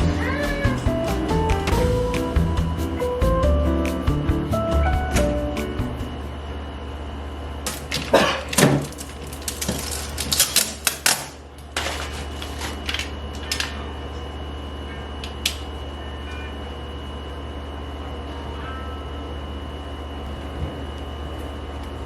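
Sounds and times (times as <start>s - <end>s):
steady low hum: 0.0s - 22.0s
hard objects clicking and knocking: 7.7s - 13.8s.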